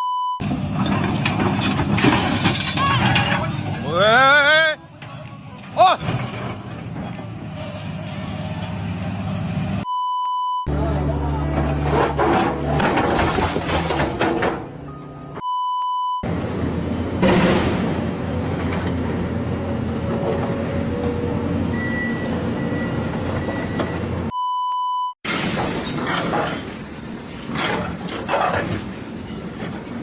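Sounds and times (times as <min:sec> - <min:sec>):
rumbling mechanical noise: 0:00.4 - 0:09.8, 0:10.7 - 0:15.4, 0:16.2 - 0:24.3.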